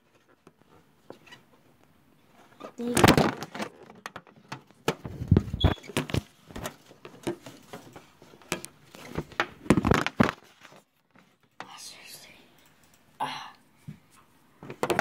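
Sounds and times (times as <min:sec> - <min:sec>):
microphone handling noise: 0:05.0 - 0:06.3.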